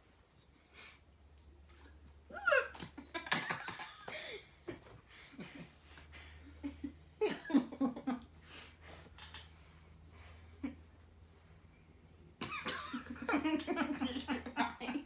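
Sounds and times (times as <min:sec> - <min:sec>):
human laughter: 0:02.3 - 0:08.3, 0:12.6 - 0:15.0.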